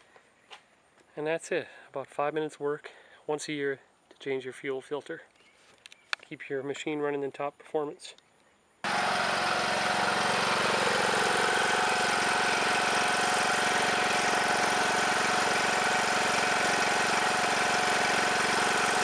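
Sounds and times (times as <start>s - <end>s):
lawn tractor engine running: 8.8s - 19.0s.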